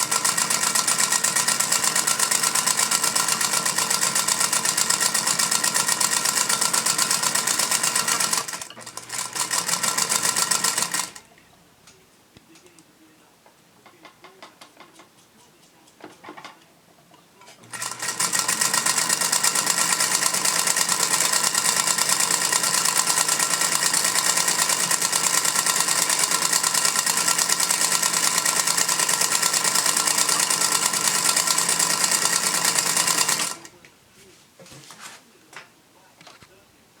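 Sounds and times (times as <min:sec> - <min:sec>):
sewing machine running: 0:00.0 - 0:11.3, 0:17.6 - 0:33.7.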